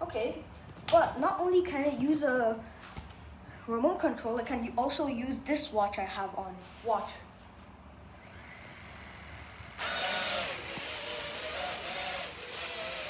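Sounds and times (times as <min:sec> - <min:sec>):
toy drone motors whirring: 0:08.2 - 0:13.0.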